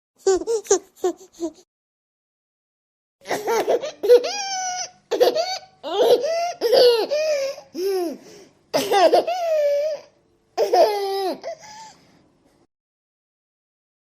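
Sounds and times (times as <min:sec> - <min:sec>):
baby giggling: 0:00.2 - 0:01.6, 0:03.2 - 0:08.2, 0:08.8 - 0:11.6.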